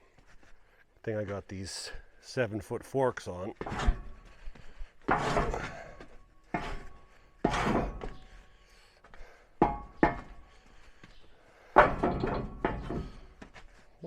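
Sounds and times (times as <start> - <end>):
metal ramp clunking: 3.6 - 4.4, 5.0 - 8.6, 9.6 - 10.7, 11.7 - 13.5.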